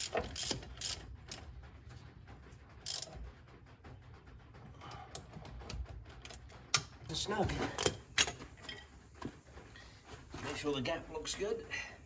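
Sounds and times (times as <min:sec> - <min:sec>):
ratchet wrench clicking: 0:00.0 - 0:01.4, 0:02.8 - 0:03.1.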